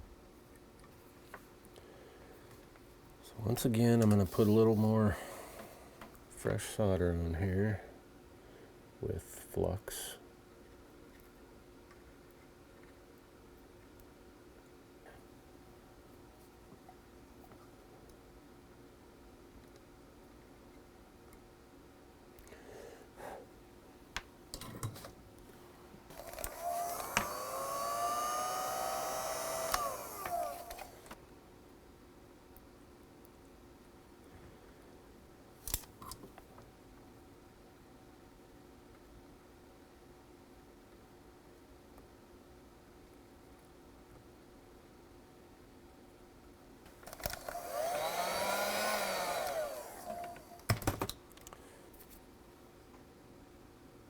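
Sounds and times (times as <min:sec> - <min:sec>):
motor and fan whirring: 0:26.0 - 0:31.2, 0:46.9 - 0:51.1.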